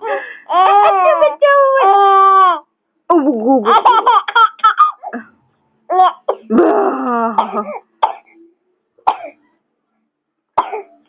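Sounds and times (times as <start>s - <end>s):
child laughing: 0.5s - 1.9s
child coughing: 7.4s - 8.3s, 9.1s - 9.4s, 10.6s - 10.9s.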